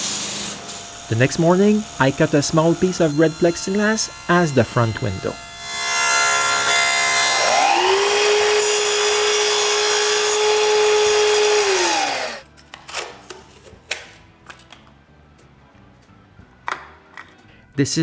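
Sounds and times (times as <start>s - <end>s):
power saw whining: 0.0s - 12.5s.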